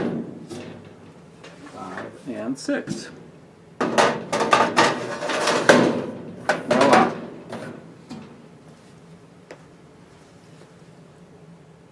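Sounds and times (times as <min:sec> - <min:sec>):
steel drawers sliding and clanking: 0:00.0 - 0:02.2, 0:03.8 - 0:08.4.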